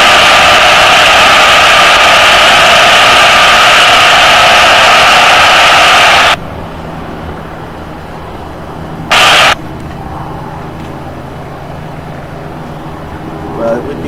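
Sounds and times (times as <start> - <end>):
radio static hiss: 0.0 - 6.4, 9.1 - 11.4
steady low hum: 0.0 - 14.0.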